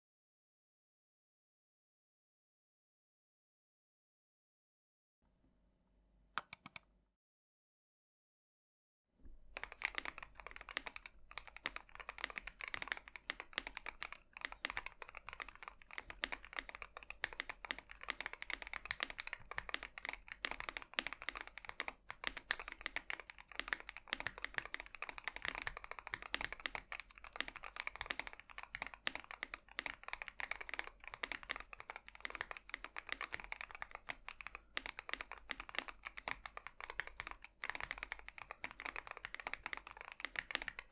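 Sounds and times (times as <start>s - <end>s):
fast mechanical keyboard typing: 6.4s - 6.8s, 9.6s - 40.9s.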